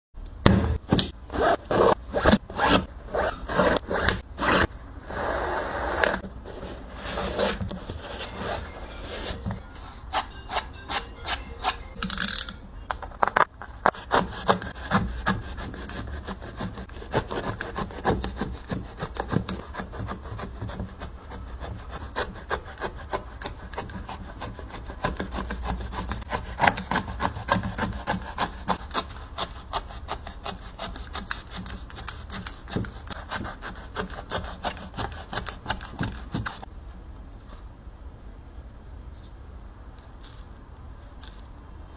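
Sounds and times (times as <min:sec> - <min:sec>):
blade sawing through shoe sole: 0:01.3 - 0:06.2, 0:13.9 - 0:36.7.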